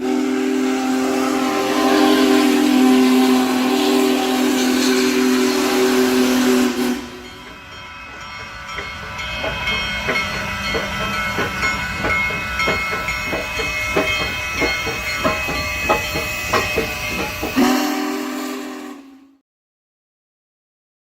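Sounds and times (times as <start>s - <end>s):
train air horn chord: 0.0s - 7.4s, 17.5s - 19.4s
freight train wheels clacking: 0.0s - 18.7s.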